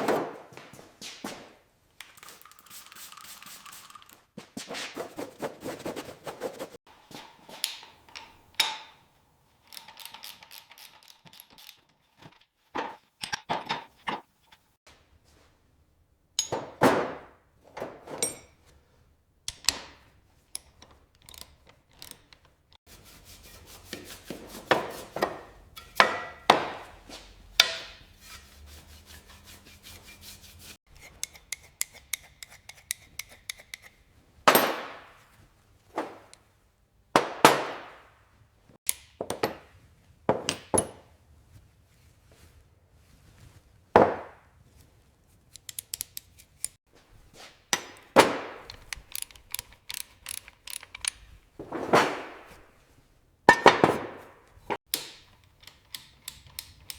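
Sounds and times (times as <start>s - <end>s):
tool scraping and knocking metal: 3.0s - 14.7s, 16.4s - 18.8s, 19.5s - 35.3s, 45.6s - 56.9s
quick rasping strokes: 4.6s - 6.8s, 28.0s - 34.0s.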